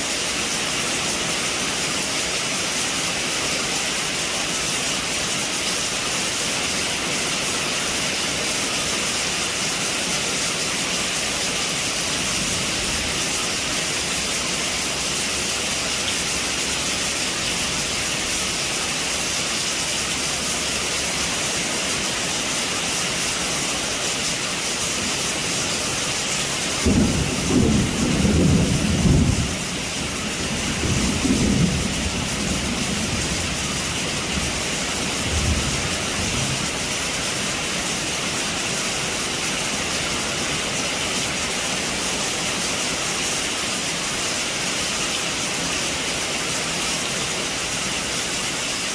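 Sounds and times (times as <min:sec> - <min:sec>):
heavy rain on a roof: 0:00.0 - 0:48.9
low rumble of thunder: 0:26.8 - 0:33.8.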